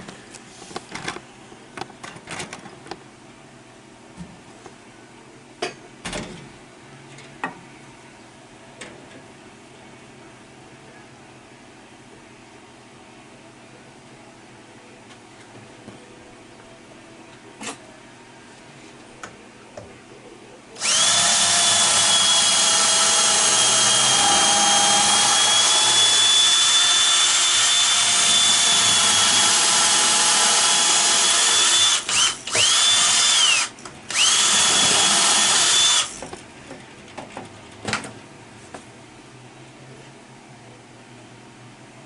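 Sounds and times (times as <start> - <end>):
power tool whining: 20.8 - 36.2.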